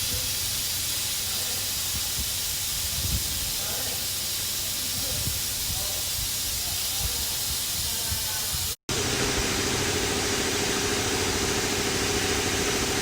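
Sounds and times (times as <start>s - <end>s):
compressed air hissing: 0.0s - 9.1s
steady machine hum: 8.9s - 13.0s.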